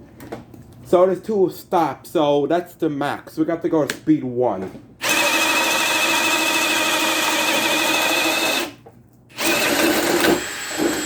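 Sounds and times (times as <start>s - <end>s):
drill whining through wood: 5.0s - 11.0s.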